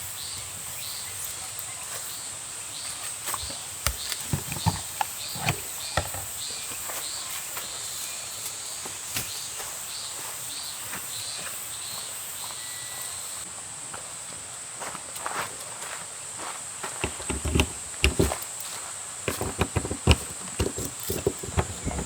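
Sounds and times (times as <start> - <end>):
insects buzzing and chirping: 0.0 - 22.0
sharp clicks and knocks: 3.9 - 6.3, 17.0 - 18.4, 19.3 - 22.0.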